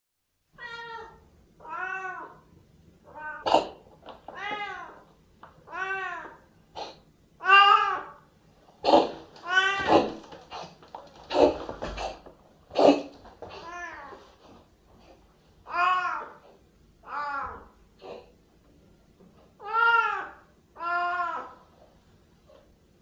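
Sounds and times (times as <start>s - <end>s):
cats meowing: 0.6s - 2.4s, 3.1s - 6.4s, 7.4s - 8.2s, 8.9s - 10.6s, 12.8s - 14.2s, 15.7s - 16.4s, 17.0s - 18.3s, 19.6s - 21.6s
cat coughing: 3.4s - 3.8s, 8.8s - 9.2s, 9.8s - 13.2s.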